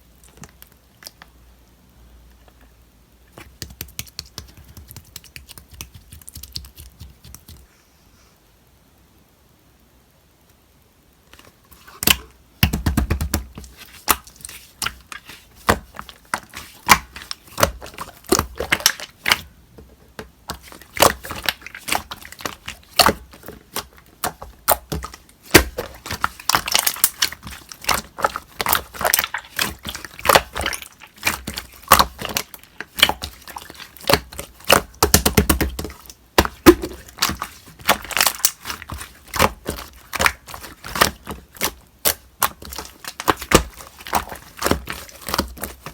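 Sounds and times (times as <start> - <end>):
slime clicking and popping: 3.5 - 7.6, 20.5 - 45.9.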